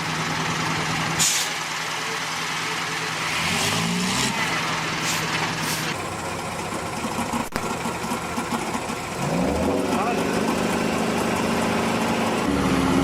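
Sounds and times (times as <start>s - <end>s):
truck diesel engine under load: 0.0s - 13.0s
short hisses: 1.2s - 1.6s.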